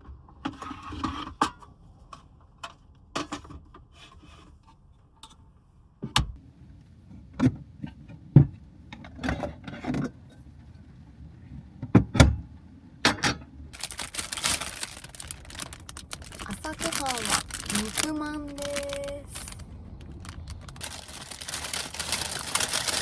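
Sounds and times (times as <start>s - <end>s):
plastic packaging crackling: 13.8s - 23.0s.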